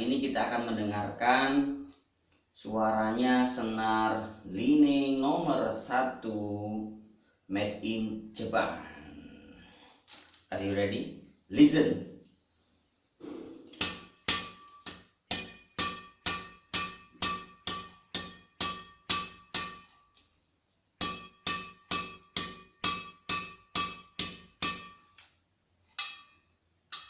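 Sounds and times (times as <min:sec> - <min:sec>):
racket strings struck pinging: 0:13.2 - 0:20.1, 0:21.0 - 0:25.2.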